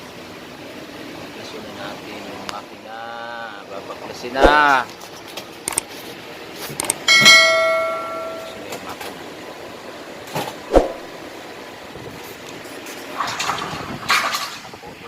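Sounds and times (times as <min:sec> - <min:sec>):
metal tools clinking: 0:06.8 - 0:08.6
struck metal ringing: 0:07.0 - 0:08.7.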